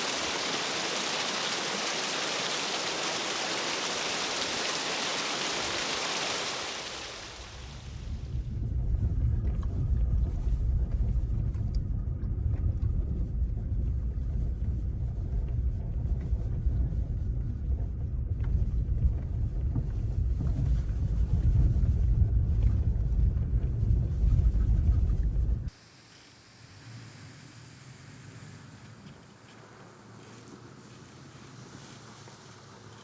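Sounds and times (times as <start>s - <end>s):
wind buffeting microphone: 0.0s - 25.7s.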